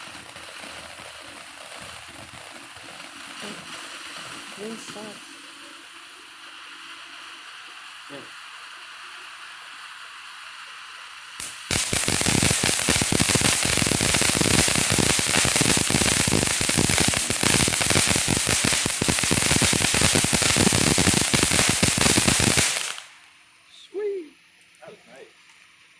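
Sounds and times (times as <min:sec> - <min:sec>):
fountain firework crackling spray: 0:00.0 - 0:24.2.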